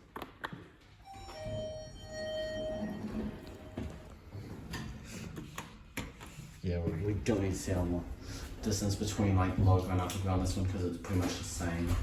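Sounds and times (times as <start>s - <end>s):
two-tone electronic chime: 1.0s - 4.1s.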